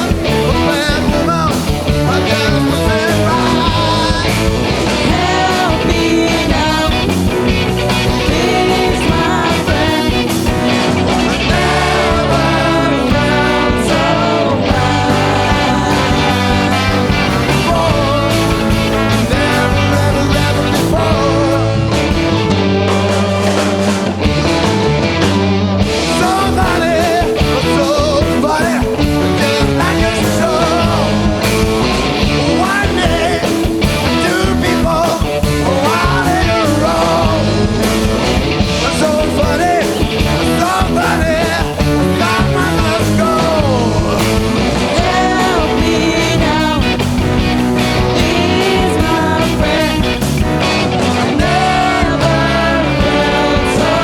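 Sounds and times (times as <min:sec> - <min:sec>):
person singing: 0:00.0 - 0:24.2, 0:25.9 - 0:54.0
jazz band playing: 0:00.0 - 0:54.0.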